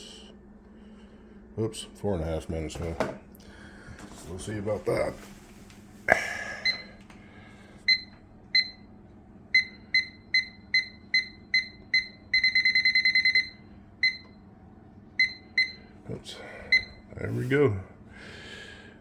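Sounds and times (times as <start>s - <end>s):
microwave keypad beeps: 6.6s - 7.0s, 7.9s - 8.9s, 9.5s - 14.5s, 15.2s - 15.9s, 16.7s - 17.0s.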